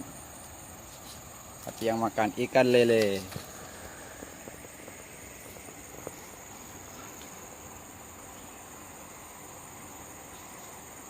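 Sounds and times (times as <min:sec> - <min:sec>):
insect chorus chirring: 0:00.0 - 0:11.0.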